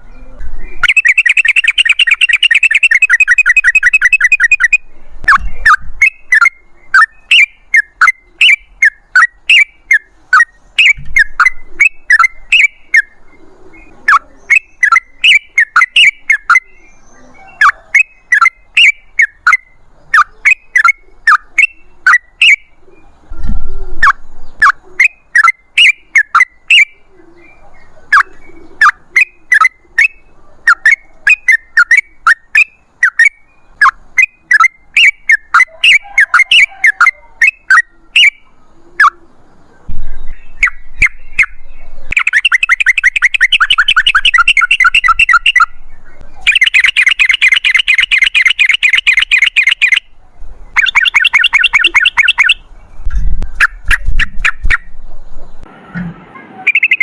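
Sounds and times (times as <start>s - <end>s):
bird chirping: 0.0s - 55.7s, 56.4s - 57.0s
bird rattling trills: 0.8s - 4.7s, 50.8s - 52.6s.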